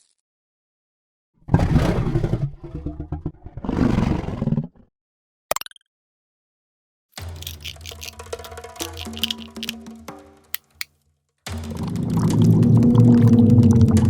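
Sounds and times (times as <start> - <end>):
music with wood-block beat: 7.2 - 12.0.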